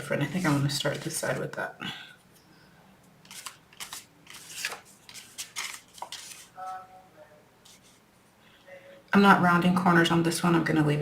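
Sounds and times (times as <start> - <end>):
paper rustling and scraping: 0.0 - 1.4, 3.2 - 6.6, 7.6 - 8.0
faint tone: 6.6 - 7.5.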